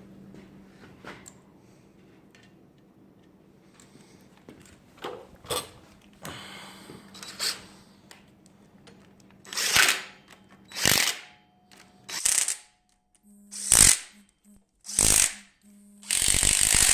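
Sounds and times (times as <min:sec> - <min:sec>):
power tool driving bolts: 0:09.5 - 0:11.3, 0:12.1 - 0:12.7, 0:13.5 - 0:14.1, 0:14.9 - 0:16.9.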